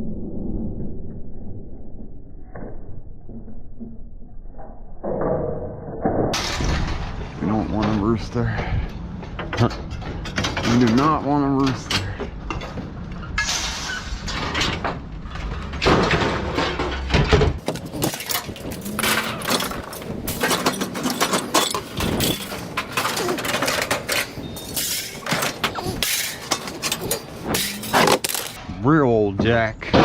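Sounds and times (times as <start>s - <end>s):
low rumble: 0.0s - 29.2s
scrap clattering and banging: 6.4s - 28.6s.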